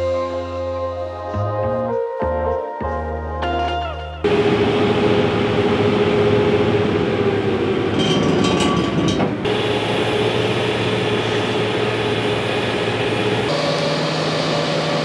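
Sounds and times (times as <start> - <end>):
engine running: 4.2 - 8.6, 9.2 - 15.0
clattering: 8.0 - 9.5.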